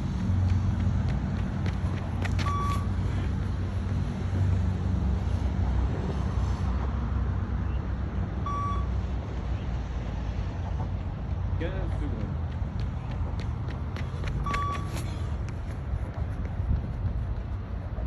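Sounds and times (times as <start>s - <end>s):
short electronic beeps: 2.4s - 2.9s, 8.4s - 9.0s, 14.4s - 15.0s.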